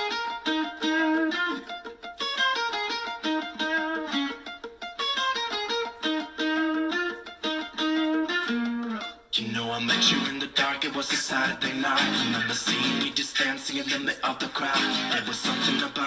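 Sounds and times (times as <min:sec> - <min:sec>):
plucked guitar riff: 0:00.0 - 0:16.0.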